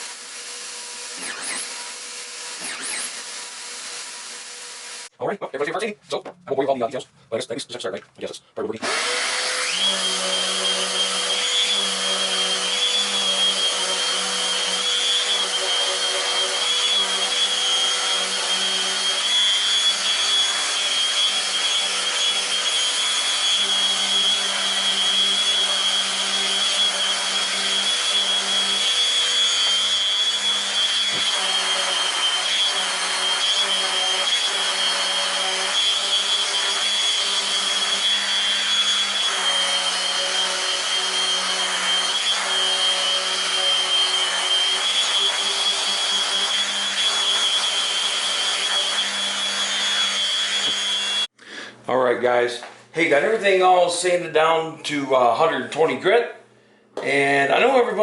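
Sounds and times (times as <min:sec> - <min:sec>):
power sander on wood: 0:00.0 - 0:05.1, 0:08.8 - 0:51.4.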